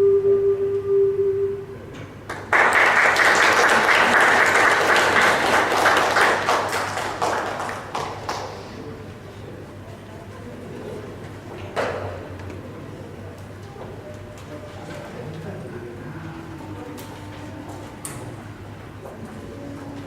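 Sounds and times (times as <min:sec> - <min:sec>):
ocarina ensemble note: 0:00.0 - 0:02.3, 0:14.2 - 0:20.0
audience applause: 0:02.3 - 0:08.8.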